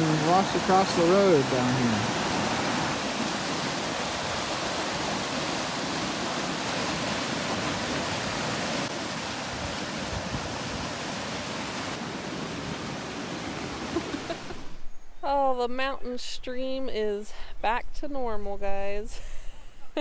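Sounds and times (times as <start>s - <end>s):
floodwater rushing over gravel: 0.0s - 14.4s.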